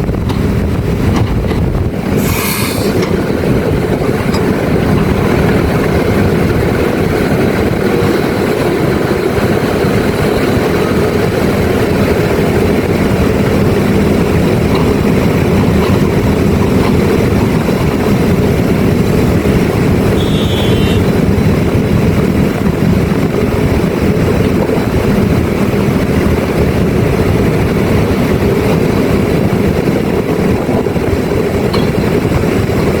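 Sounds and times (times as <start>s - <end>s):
heavy machinery engine droning: 0.0s - 33.0s
brief high beep: 20.2s - 21.0s.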